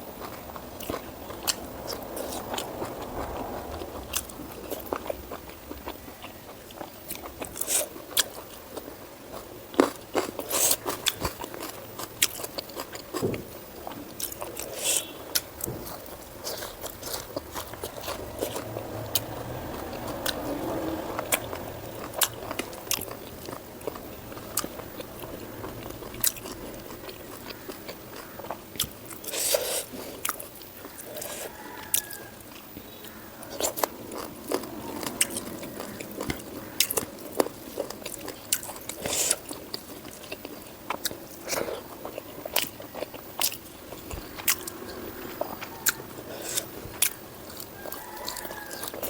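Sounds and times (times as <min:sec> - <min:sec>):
person chewing food: 0:00.0 - 0:49.0.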